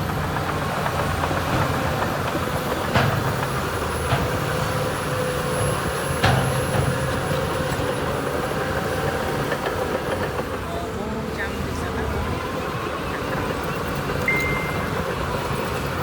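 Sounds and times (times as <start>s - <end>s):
heavy diesel engine running: 0.0s - 16.0s.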